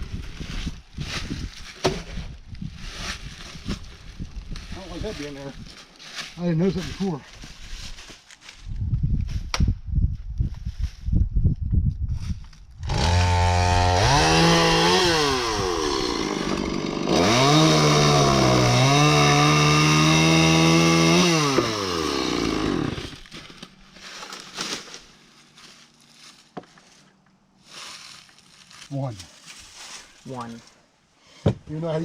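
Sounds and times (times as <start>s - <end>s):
chainsaw cutting wood: 12.8s - 23.3s.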